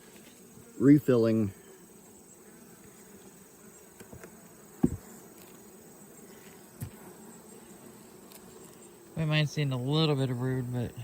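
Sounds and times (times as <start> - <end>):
bees buzzing: 0.0 - 11.0
knocks on hive: 4.0 - 5.2.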